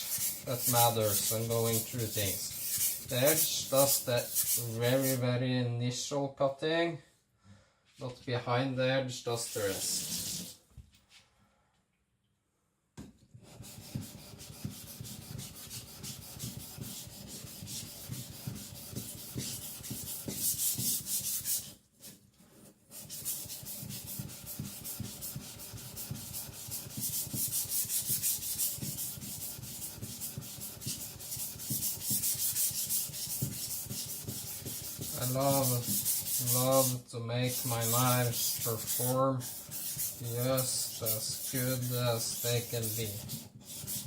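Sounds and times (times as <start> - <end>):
blade scraping on whetstone: 0.0 - 5.2, 37.6 - 44.0.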